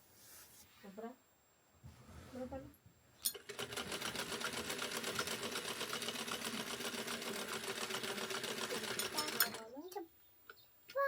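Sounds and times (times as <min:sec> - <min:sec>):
sewing machine running: 0:03.3 - 0:09.6.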